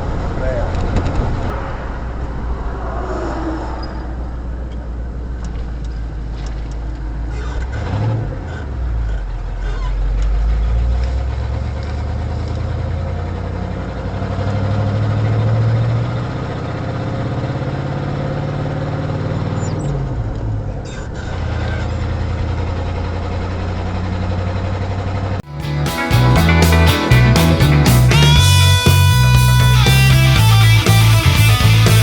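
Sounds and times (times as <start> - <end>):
truck engine running: 20.0 - 32.0.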